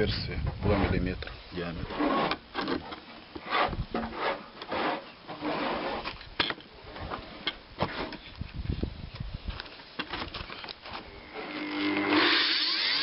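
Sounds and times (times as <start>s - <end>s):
wood scraping on bench: 1.8s - 6.3s, 6.9s - 8.3s.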